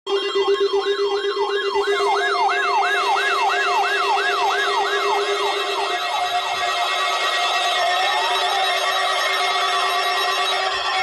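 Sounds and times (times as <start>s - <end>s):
weather radio siren alert: 1.3s - 5.6s.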